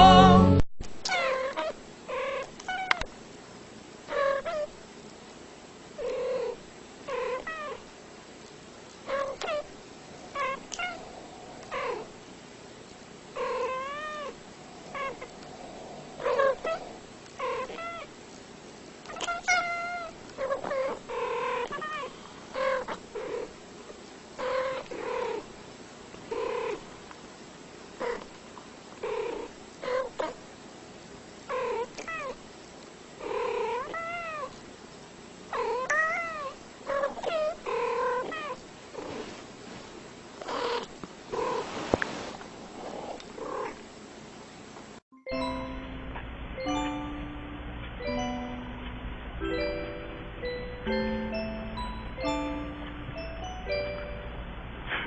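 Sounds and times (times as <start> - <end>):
cat meowing: 1.0 - 3.0, 19.1 - 21.0.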